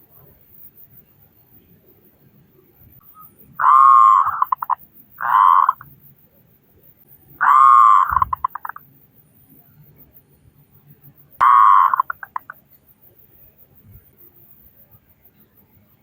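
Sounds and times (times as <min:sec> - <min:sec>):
dove cooing: 0:03.6 - 0:05.8, 0:07.4 - 0:08.8, 0:11.4 - 0:12.5.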